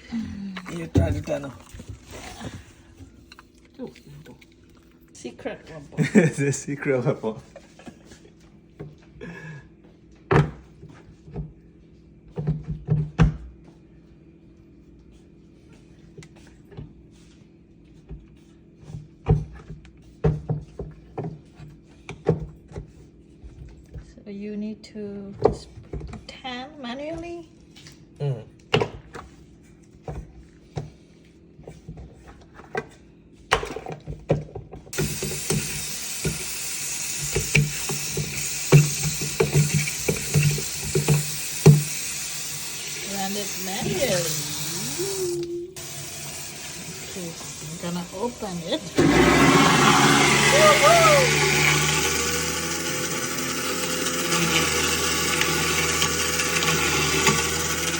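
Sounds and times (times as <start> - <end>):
garbage disposal knocks and clunks: 0.6 - 1.9, 10.3 - 10.7, 37.2 - 42.1
motor humming: 34.9 - 57.9.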